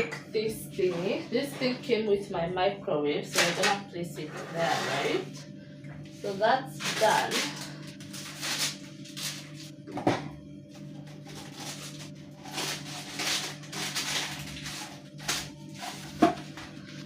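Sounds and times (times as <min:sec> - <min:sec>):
soft background music: 0:00.0 - 0:17.0
steady low hum: 0:00.0 - 0:17.0
kitchen items knocking and clinking: 0:16.0 - 0:16.7.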